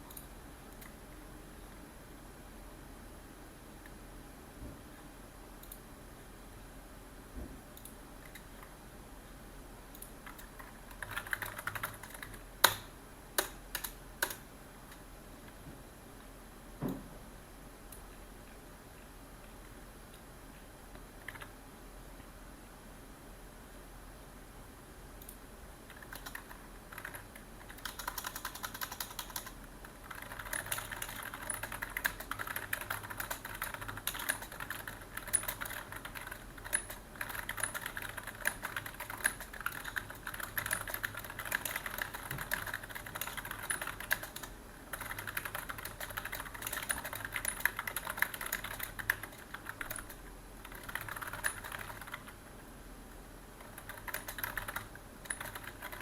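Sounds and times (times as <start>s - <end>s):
computer keyboard typing: 10.0s - 15.0s, 21.2s - 21.5s, 25.2s - 52.4s, 53.6s - 56.0s.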